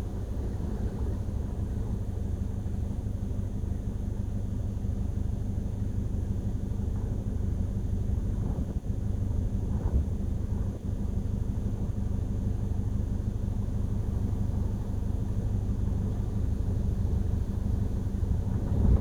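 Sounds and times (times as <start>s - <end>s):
wind buffeting microphone: 16.7s - 19.0s.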